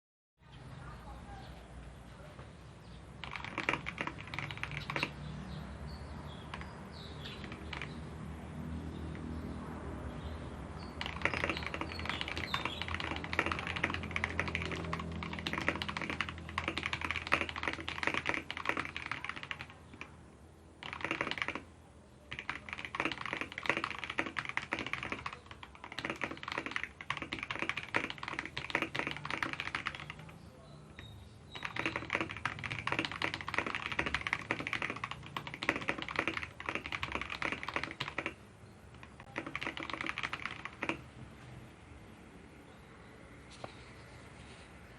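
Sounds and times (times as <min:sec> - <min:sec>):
mechanical keyboard typing: 0:03.2 - 0:05.3, 0:06.4 - 0:08.0, 0:10.9 - 0:20.2, 0:20.8 - 0:30.4, 0:31.0 - 0:41.1.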